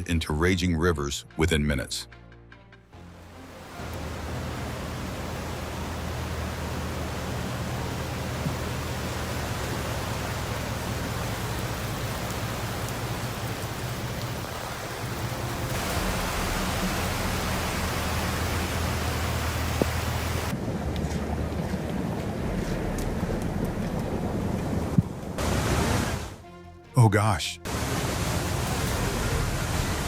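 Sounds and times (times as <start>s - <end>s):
heavy rain and floodwater rushing: 3.0s - 30.0s.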